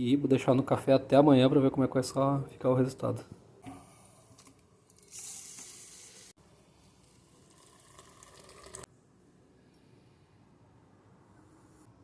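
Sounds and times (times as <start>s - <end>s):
coffee being poured: 4.4s - 8.9s.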